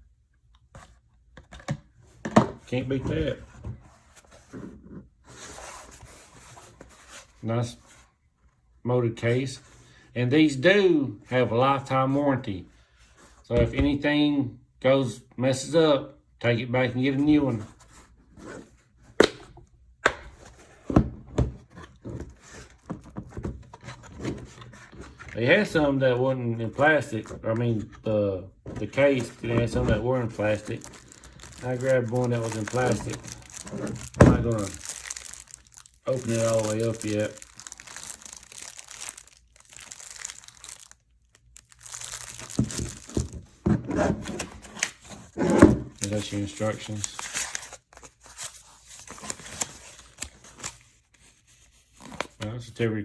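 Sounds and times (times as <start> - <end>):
plastic wrapping rubbing: 28.9 - 43.6, 44.2 - 52.2.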